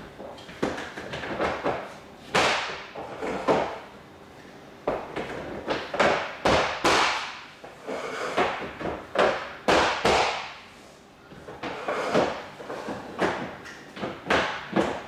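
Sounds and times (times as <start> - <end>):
plastic floor tiles knocking: 0.5 - 1.8, 13.1 - 15.0.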